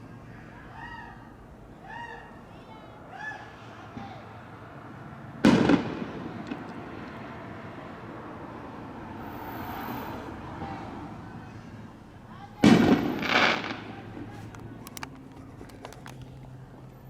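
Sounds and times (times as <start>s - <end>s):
loud firework bang: 5.4s - 6.9s, 12.6s - 14.0s
faint crackles: 12.8s - 17.0s.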